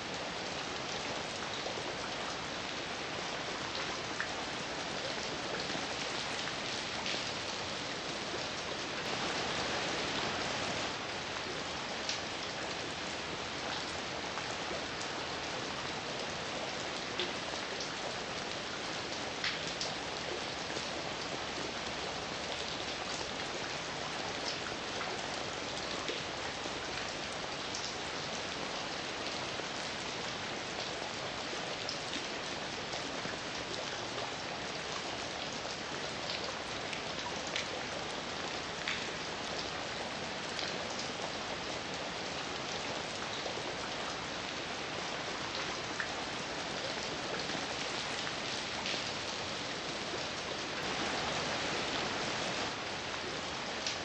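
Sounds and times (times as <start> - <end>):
heavy rain hissing: 50.7 - 52.8.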